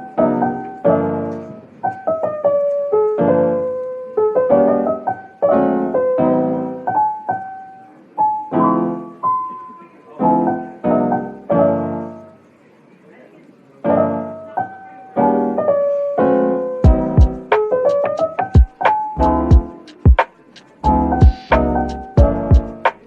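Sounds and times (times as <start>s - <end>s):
piano music: 0.0s - 12.5s, 13.8s - 23.0s.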